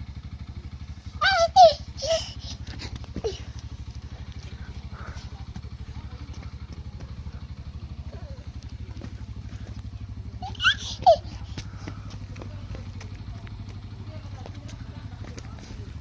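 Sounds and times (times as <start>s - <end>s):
small engine running: 0.0s - 16.0s.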